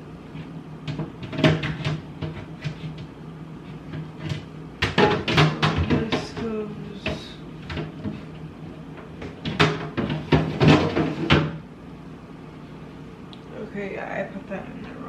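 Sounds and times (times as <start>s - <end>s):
cupboard doors knocking and clunking: 0.9s - 2.8s, 4.2s - 8.2s, 9.3s - 11.6s.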